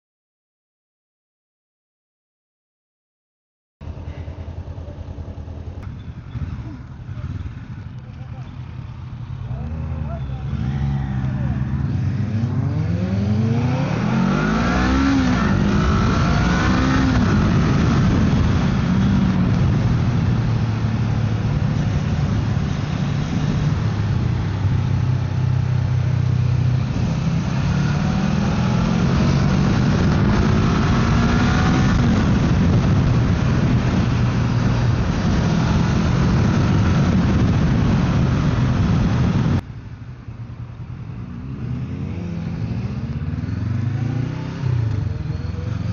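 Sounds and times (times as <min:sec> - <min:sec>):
motorcycle engine accelerating: 0:03.8 - 0:45.9
wind noise: 0:11.9 - 0:40.0.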